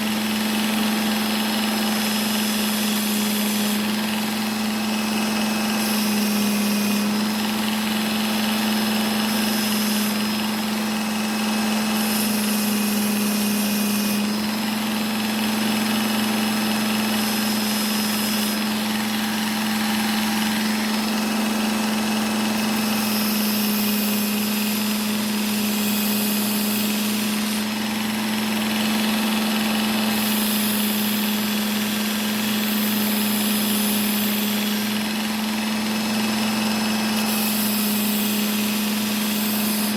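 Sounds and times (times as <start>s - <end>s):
belt sharpener humming: 0.0s - 39.9s
blade hissing on belt: 15.6s - 39.9s.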